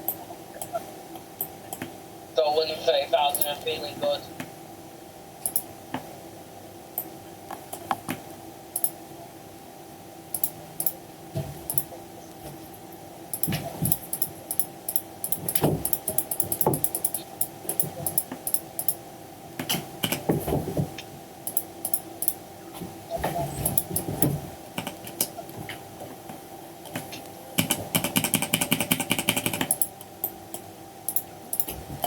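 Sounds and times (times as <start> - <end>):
steady electrical hum: 0.0 - 32.0
computer keyboard typing: 5.5 - 5.7, 10.4 - 11.0, 13.4 - 19.0, 24.8 - 25.3, 26.9 - 30.4, 31.1 - 31.8.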